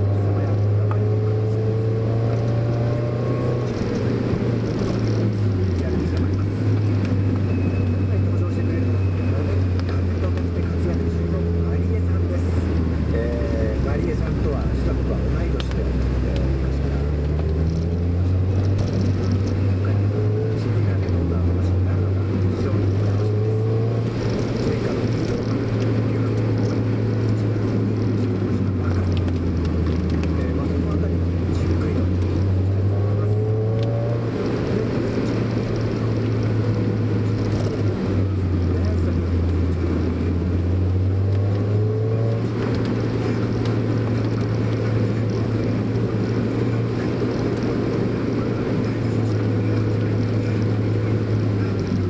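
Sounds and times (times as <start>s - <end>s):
car engine and road noise: 0.0s - 52.0s.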